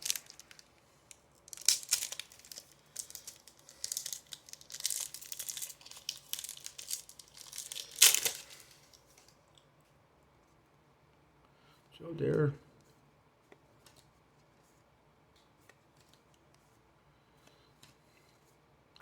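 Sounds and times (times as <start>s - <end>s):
wrapper being torn and crinkled: 0.0s - 0.7s, 1.4s - 9.0s.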